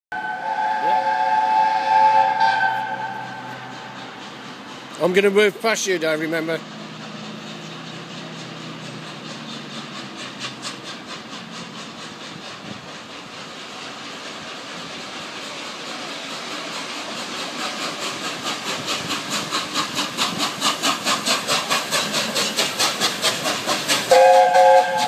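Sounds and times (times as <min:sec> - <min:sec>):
steam hiss: 0:00.2 - 0:25.0
steam locomotive exhaust chuffing: 0:00.2 - 0:25.0.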